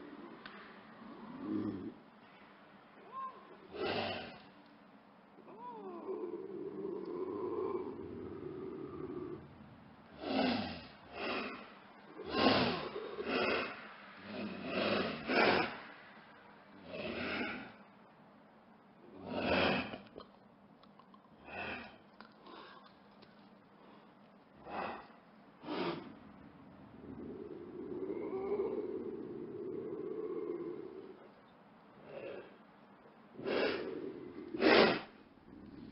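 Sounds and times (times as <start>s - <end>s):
lynx snorting: 10.1s - 15.8s, 33.4s - 35.9s.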